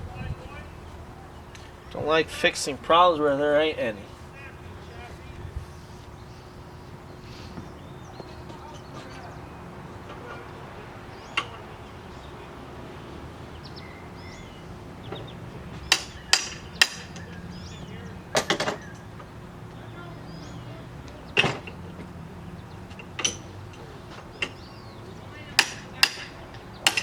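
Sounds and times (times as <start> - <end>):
metal tools knocking and clinking: 15.1 - 17.5, 18.3 - 19.0, 21.4 - 22.1, 22.9 - 24.6, 25.5 - 27.0.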